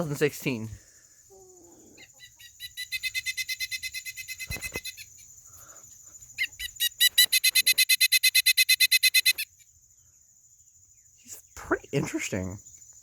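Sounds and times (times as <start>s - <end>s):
woodpecker call through small speaker: 1.4s - 5.2s, 6.4s - 9.6s.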